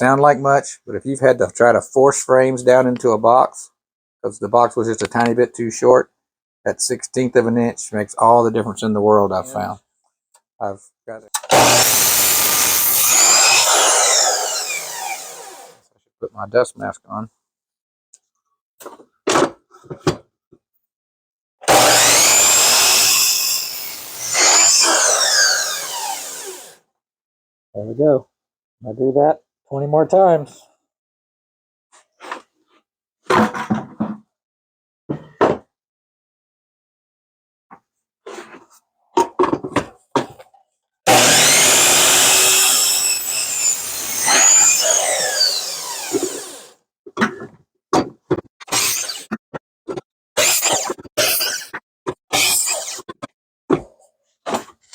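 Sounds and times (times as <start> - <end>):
saw blade cutting wood: 11.4 - 15.8, 21.6 - 26.8, 41.1 - 46.8, 48.6 - 49.4, 50.4 - 53.3
saw motor whining: 11.4 - 15.8, 21.7 - 26.8, 41.1 - 46.7.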